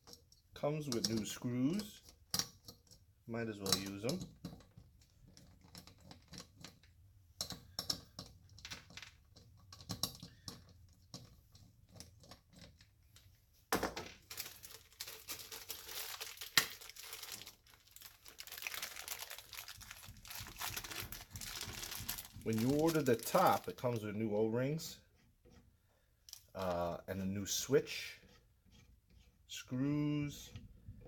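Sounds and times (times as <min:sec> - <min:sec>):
packaging crinkling and tearing: 0:14.2 - 0:23.9.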